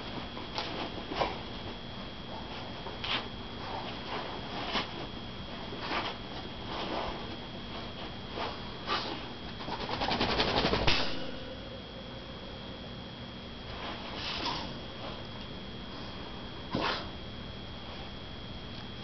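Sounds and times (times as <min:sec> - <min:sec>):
dog shaking rattle: 0:09.6 - 0:11.0.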